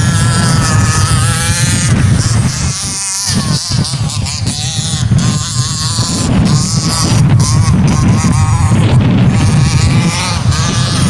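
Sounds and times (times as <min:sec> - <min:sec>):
small two-stroke engine revving: 0:00.0 - 0:11.0
wind rumble on microphone: 0:00.0 - 0:11.0.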